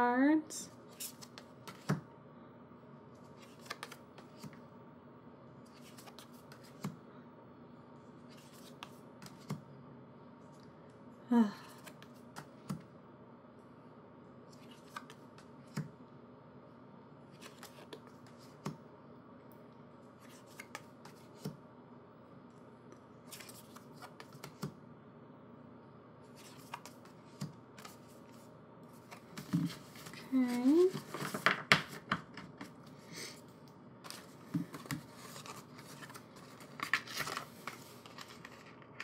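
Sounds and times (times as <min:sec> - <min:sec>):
low room hum: 0:00.0 - 0:39.0
cards and paper clicking: 0:00.9 - 0:02.0, 0:03.3 - 0:04.6, 0:05.7 - 0:07.0, 0:08.3 - 0:09.6, 0:11.7 - 0:12.8, 0:14.6 - 0:15.9, 0:17.4 - 0:18.8, 0:20.2 - 0:21.5, 0:23.3 - 0:24.7, 0:26.4 - 0:28.2, 0:34.0 - 0:39.0.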